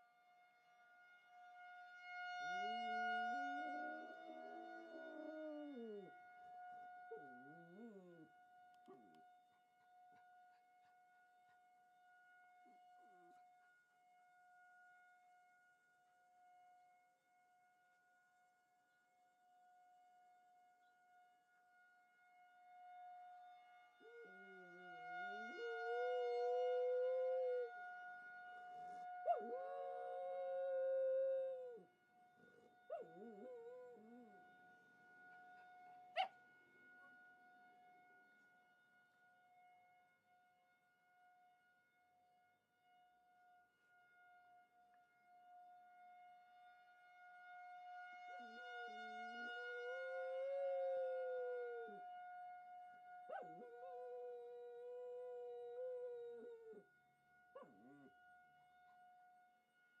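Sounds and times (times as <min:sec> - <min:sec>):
siren steady tone: 0:00.0 - 1:00.0
dog howling: 0:02.7 - 0:06.1, 0:07.1 - 0:08.3, 0:24.0 - 0:27.7, 0:29.2 - 0:31.9, 0:32.5 - 0:34.4, 0:49.3 - 0:52.1, 0:53.3 - 0:56.8.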